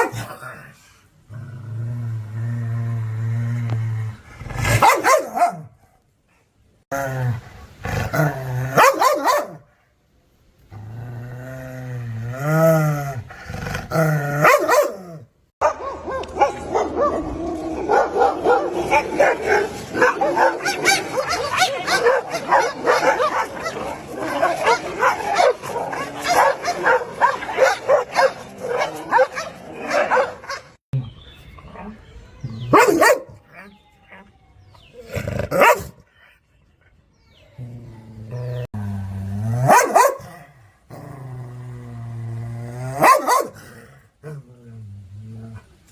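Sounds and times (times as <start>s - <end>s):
dogs barking aggressively: 0.0s - 0.4s, 4.5s - 5.8s, 8.7s - 9.7s, 14.4s - 30.8s, 32.7s - 33.5s, 35.3s - 36.0s, 39.6s - 40.5s, 42.9s - 43.8s
dog growling: 18.4s - 30.8s.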